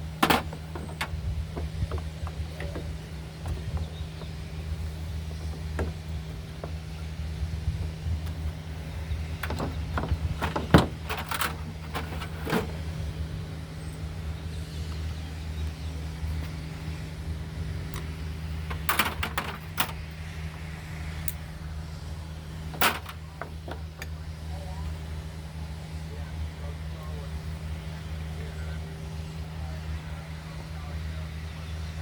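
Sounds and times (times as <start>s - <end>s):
steady low hum: 0.0s - 32.0s
tools and parts clicking: 0.2s - 1.1s, 9.4s - 12.7s, 18.7s - 20.0s, 22.8s - 23.2s.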